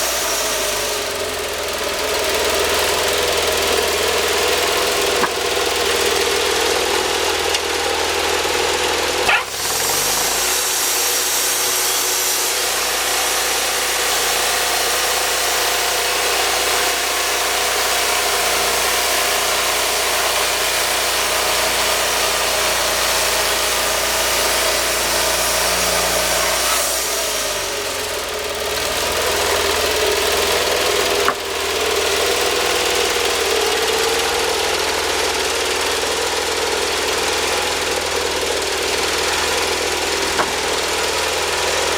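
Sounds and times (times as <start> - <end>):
motor humming: 0.0 - 14.0, 35.8 - 41.9
sawmill engine running: 0.0 - 41.9.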